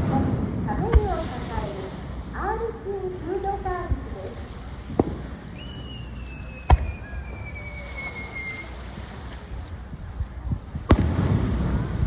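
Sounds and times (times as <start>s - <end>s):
firework whistle: 4.9s - 9.5s
sharp firework bang: 6.6s - 7.6s, 10.9s - 12.0s.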